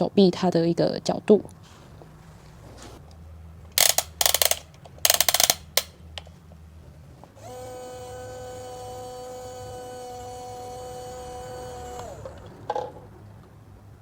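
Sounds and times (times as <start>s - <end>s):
plastic gears ratcheting: 3.7s - 5.9s
toy click: 3.7s - 5.9s
small electric motor whining: 7.4s - 12.7s.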